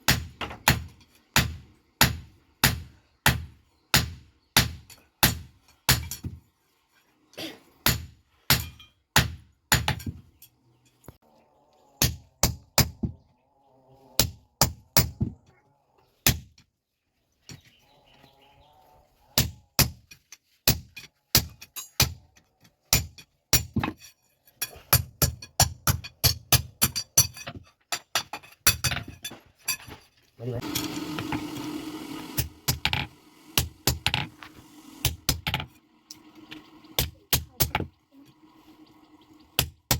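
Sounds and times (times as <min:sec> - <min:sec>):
hammer striking iron on anvil: 0:07.8 - 0:10.2.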